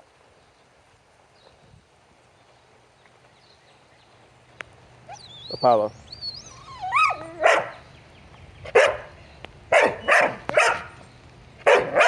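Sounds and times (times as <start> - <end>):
dog barking: 7.4 - 7.8, 8.7 - 9.1, 9.7 - 11.0, 11.6 - 12.0.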